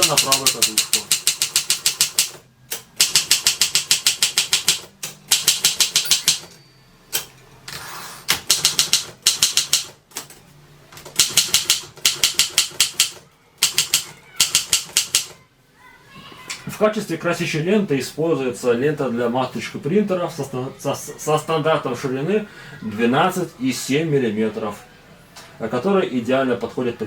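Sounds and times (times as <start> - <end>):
manual typewriter typing: 0.0 - 6.6, 8.3 - 10.4, 11.0 - 15.4.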